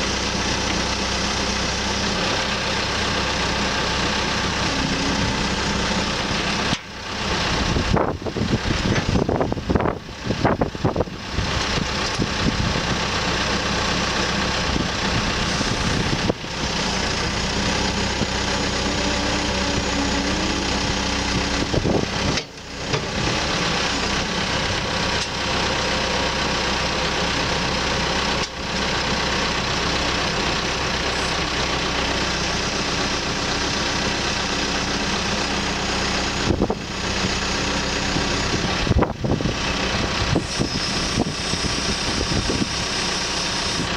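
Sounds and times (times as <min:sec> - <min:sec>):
diesel engine running: 0:00.0 - 0:43.9.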